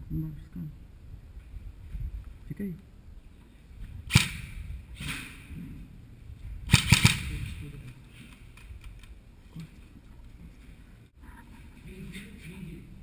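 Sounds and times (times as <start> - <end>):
airsoft guns firing: 4.1 - 5.3, 6.7 - 7.6.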